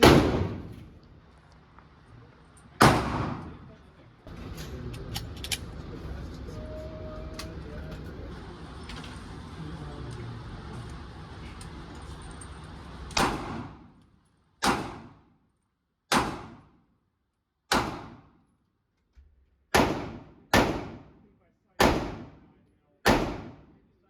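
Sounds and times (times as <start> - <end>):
gunshots: 0.0 - 1.0, 2.8 - 3.7, 13.2 - 14.0, 14.6 - 15.2, 16.1 - 16.7, 17.7 - 18.3, 19.7 - 21.2, 21.8 - 22.5, 23.1 - 23.8
steady background noise: 0.0 - 15.4.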